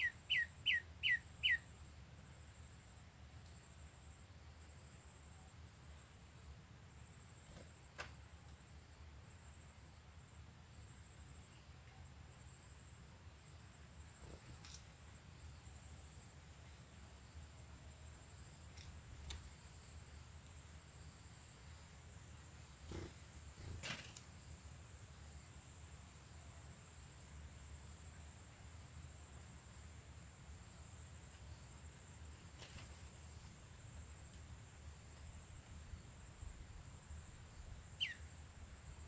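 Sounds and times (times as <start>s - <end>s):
shrill insect chorus: 0.0s - 1.8s, 12.5s - 39.0s.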